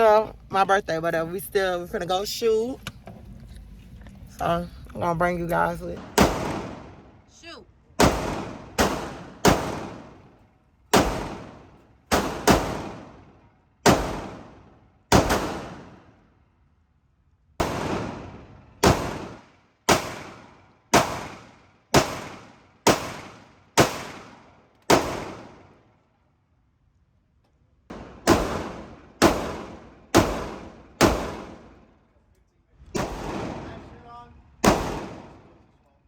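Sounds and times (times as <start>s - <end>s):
echoing gunshots: 5.8s - 7.3s, 7.9s - 16.3s, 17.6s - 25.9s, 27.9s - 32.0s, 32.9s - 35.7s.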